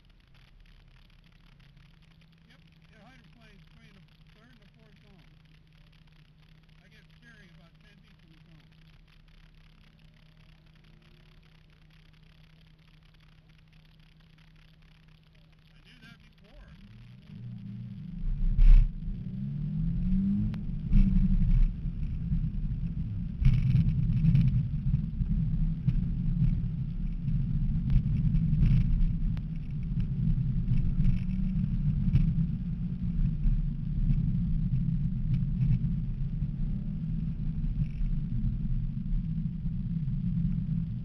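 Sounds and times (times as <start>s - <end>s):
car engine revving: 15.7s - 41.0s.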